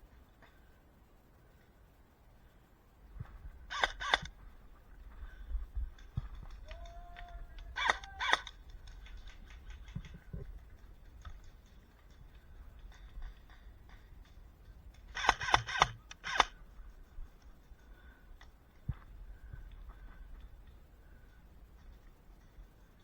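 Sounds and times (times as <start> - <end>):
faint ticks: 5.0 - 23.0.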